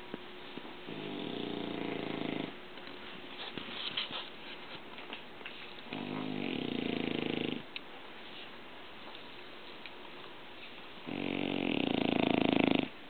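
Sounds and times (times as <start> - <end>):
dog snoring: 0.9 - 2.6, 5.9 - 7.7, 11.0 - 13.0.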